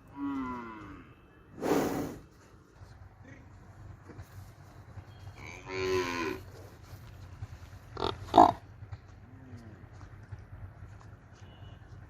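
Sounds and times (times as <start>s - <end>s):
buffalo mooing: 0.0s - 1.2s, 5.4s - 6.5s.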